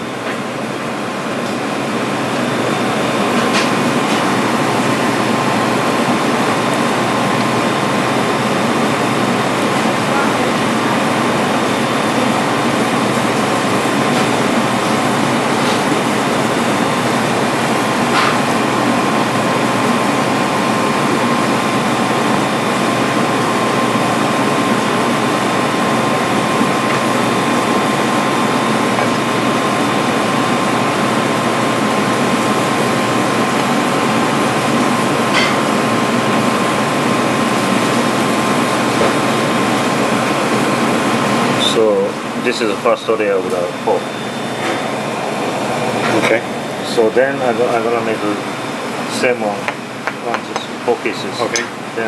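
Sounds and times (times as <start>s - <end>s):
air-conditioning rushing: 0.0s - 52.0s.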